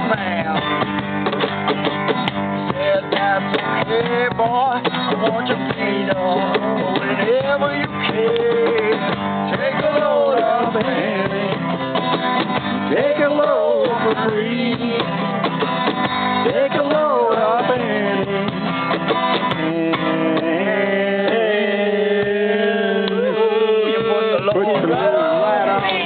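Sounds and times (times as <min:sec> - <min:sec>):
acoustic guitar strumming: 0:00.0 - 0:26.0
cajon beat: 0:00.0 - 0:26.0
voices singing along: 0:02.7 - 0:12.0, 0:12.7 - 0:15.7, 0:16.3 - 0:26.0.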